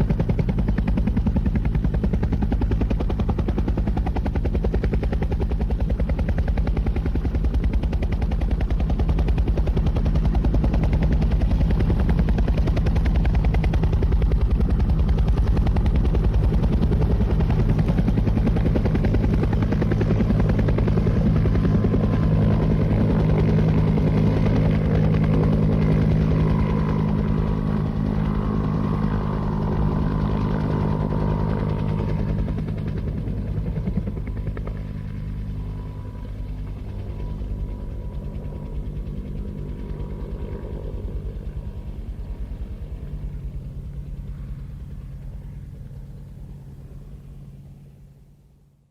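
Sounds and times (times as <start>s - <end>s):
helicopter rotor chop: 0.0s - 47.6s
deep engine drone: 8.4s - 48.9s
faint high whine: 19.7s - 48.8s.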